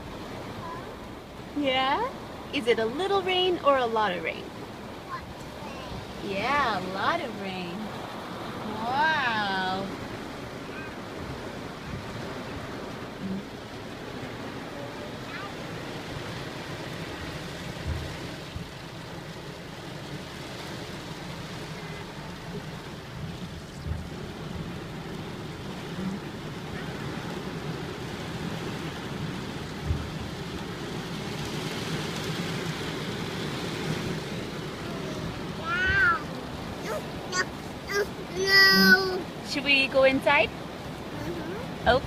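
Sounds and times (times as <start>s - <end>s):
heavy rain pouring: 0.0s - 42.0s
soft low thumps: 17.2s - 18.8s, 29.7s - 30.4s.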